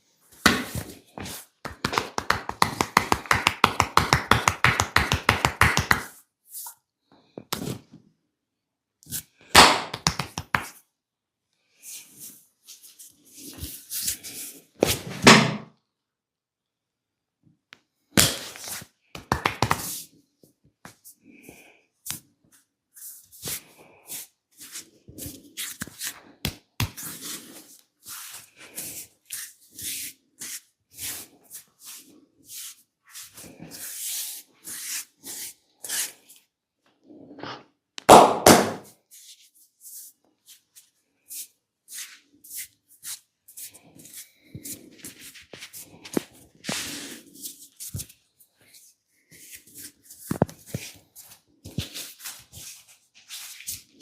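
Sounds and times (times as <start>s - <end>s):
hands tapping and rubbing skin: 0.4s - 6.2s, 9.6s - 10.8s, 18.2s - 20.0s, 25.2s - 27.1s.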